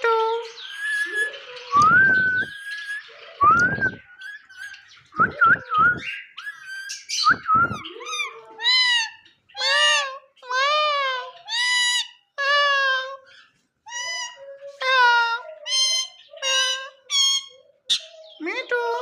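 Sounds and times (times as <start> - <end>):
parrot screeching: 6.3 - 7.2, 7.8 - 18.2.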